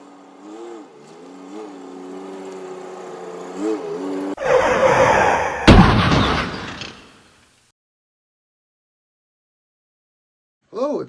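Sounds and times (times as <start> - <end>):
engine revving in blips: 0.0 - 4.4.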